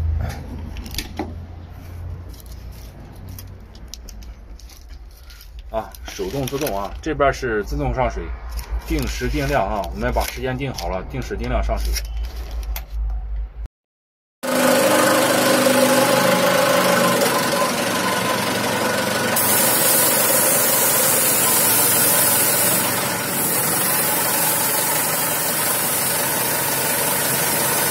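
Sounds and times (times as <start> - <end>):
concrete mixer engine running: 14.4 - 27.9
hiss: 19.4 - 27.9.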